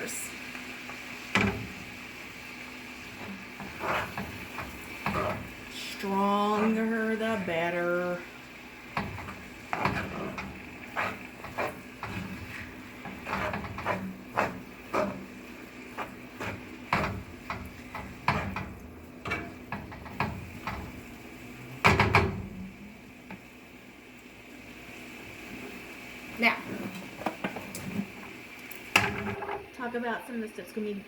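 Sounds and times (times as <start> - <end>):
utensil scraping a pan: 3.0 - 8.2, 8.9 - 21.0.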